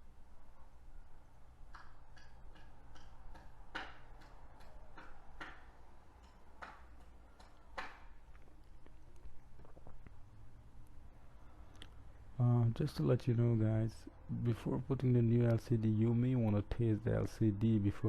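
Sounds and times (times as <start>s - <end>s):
faint low hum: 0.0s - 18.0s.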